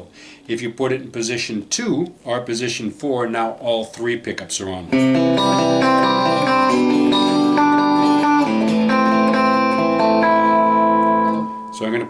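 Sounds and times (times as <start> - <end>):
electric guitar ringing chords: 4.9 - 12.0.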